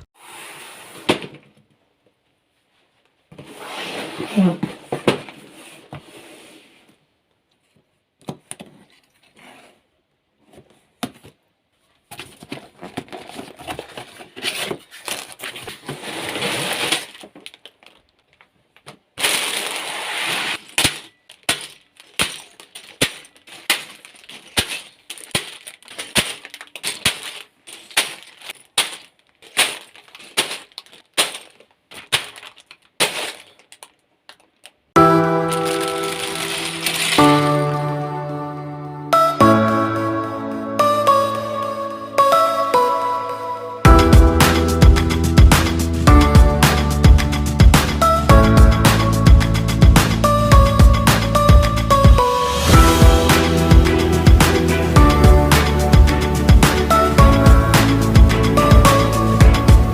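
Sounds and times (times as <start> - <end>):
plastic pieces clattering: 12.0 - 34.9, 35.5 - 37.7.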